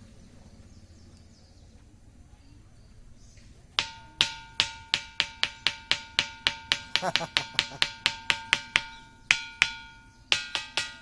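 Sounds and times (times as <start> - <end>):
stone striking ringing rock: 3.8 - 11.0.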